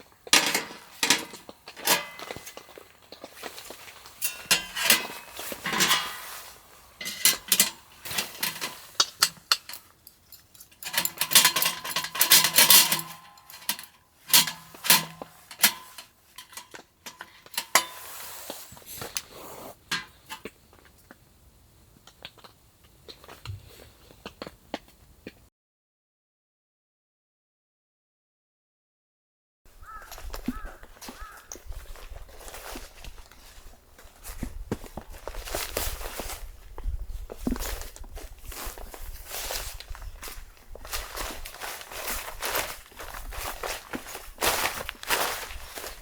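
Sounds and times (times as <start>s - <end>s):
cookware clinking and clattering: 0.0s - 18.2s, 19.9s - 20.5s.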